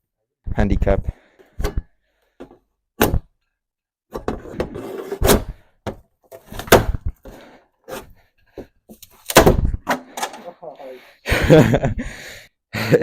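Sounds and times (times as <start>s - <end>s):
rattling and scraping: 4.2s - 5.6s.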